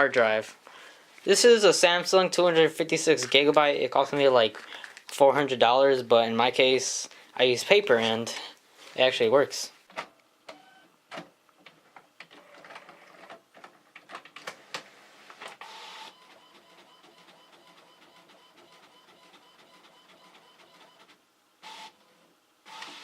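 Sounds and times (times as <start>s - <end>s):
printer whirring: 15.6s - 22.0s, 22.7s - 23.0s.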